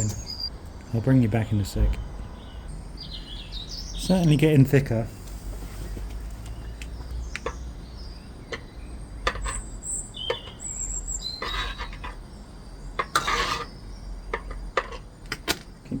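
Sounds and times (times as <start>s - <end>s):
birds chirping: 0.0s - 16.0s
saucepan scraping: 8.5s - 15.1s.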